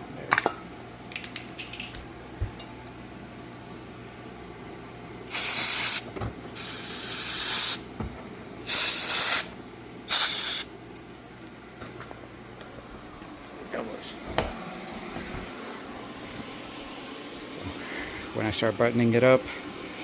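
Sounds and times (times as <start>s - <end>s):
aerosol can spraying: 5.3s - 7.8s, 8.7s - 10.7s.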